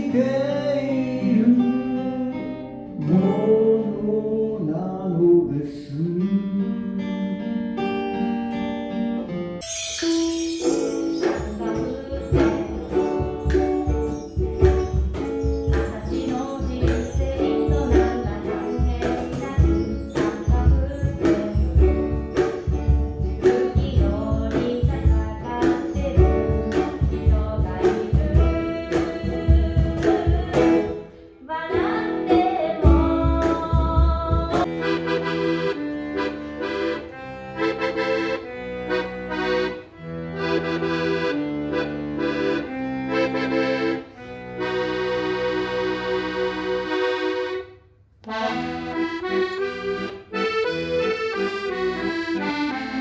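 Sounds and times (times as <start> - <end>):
held chords: 9.6 - 53.0
drum and bass beat: 11.2 - 30.9.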